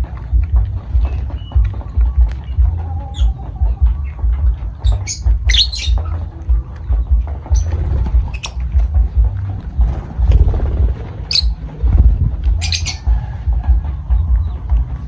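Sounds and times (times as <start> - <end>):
birds squawking shrilly: 4.8 - 6.3, 7.0 - 9.2, 10.2 - 13.5
low uneven rumble: 6.2 - 14.5.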